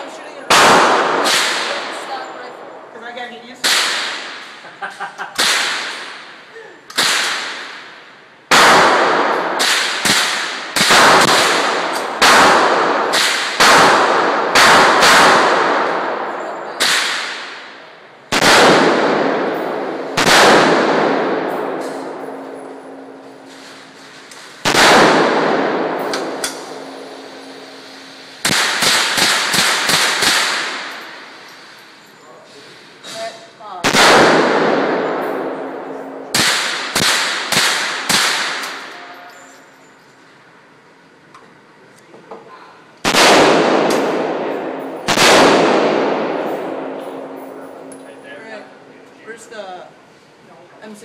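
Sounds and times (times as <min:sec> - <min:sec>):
rifle shots echoing: 0:00.0 - 0:02.8, 0:03.6 - 0:04.6, 0:05.4 - 0:06.4, 0:07.0 - 0:31.7, 0:33.8 - 0:39.0, 0:43.0 - 0:49.0.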